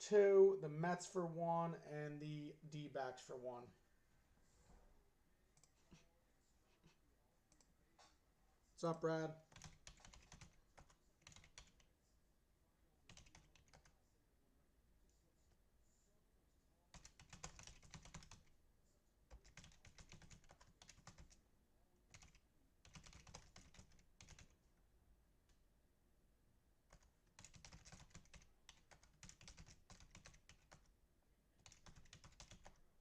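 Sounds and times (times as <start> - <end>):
computer keyboard typing: 9.5 - 11.9, 13.1 - 14.0, 16.9 - 18.5, 19.3 - 21.4, 22.1 - 24.6, 26.9 - 30.9, 31.6 - 32.8.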